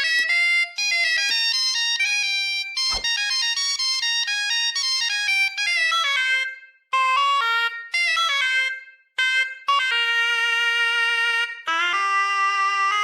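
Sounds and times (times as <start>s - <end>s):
wind instrument melody: 0.0s - 13.0s.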